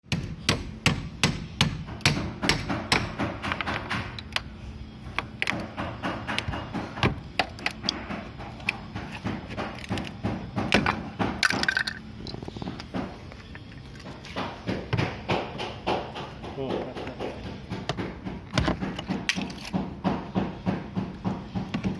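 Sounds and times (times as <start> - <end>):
hammer knocking on metal panel: 0.1 - 4.2, 14.3 - 21.9.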